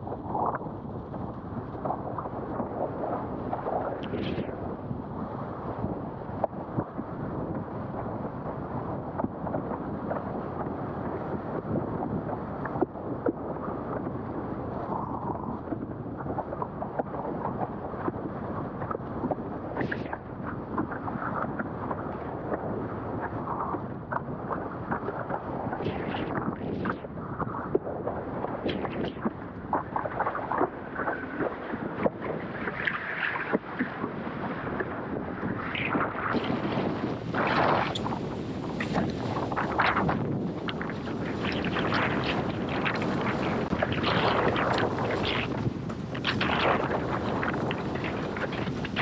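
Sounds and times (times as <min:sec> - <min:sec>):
wind buffeting microphone: 0:00.0 - 0:49.0
board slapping through water: 0:14.9 - 0:49.0
water rushing: 0:35.8 - 0:49.0.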